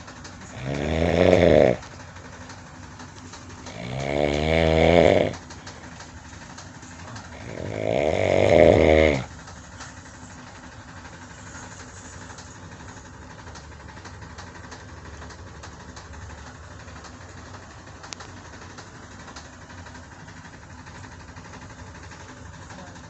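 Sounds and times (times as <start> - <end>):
cat purring: 0.0 - 10.6.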